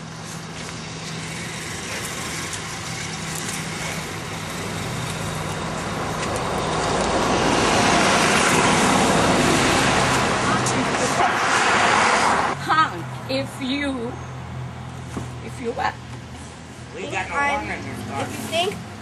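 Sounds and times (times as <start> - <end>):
car engine hum: 0.0 - 19.0
tyre and traffic hiss: 14.9 - 19.0.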